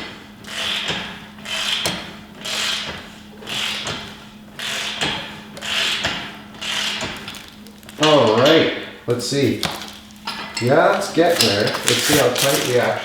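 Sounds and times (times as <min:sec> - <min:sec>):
wrench rasping on nut: 0:04.6 - 0:07.2.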